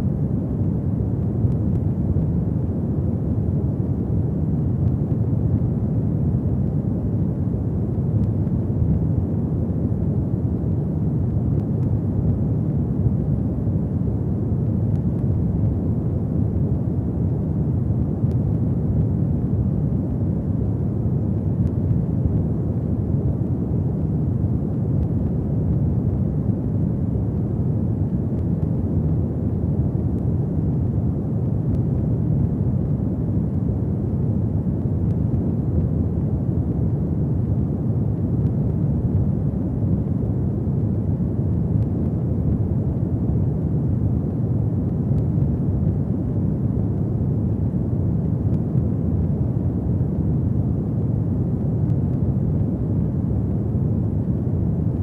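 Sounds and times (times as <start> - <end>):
fire burning with low rumble: 0.0 - 55.0.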